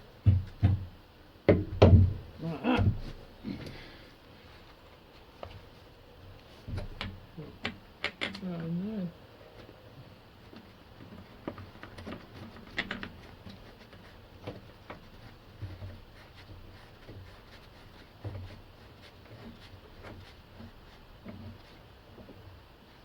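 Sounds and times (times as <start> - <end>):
metal parts clicking and knocking: 11.5 - 13.2.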